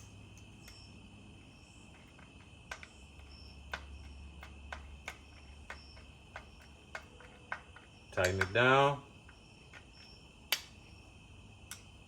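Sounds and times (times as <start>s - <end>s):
crickets chirring: 0.0s - 12.0s
hand tools clicking: 2.0s - 8.9s.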